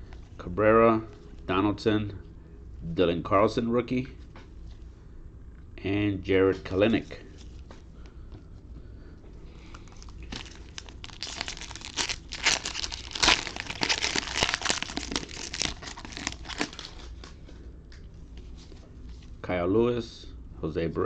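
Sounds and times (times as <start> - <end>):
plastic packaging crinkling: 9.6 - 17.4.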